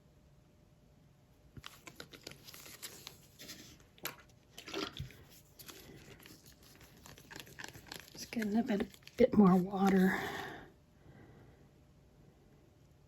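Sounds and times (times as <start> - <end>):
crinkly scraping: 1.6 - 10.2.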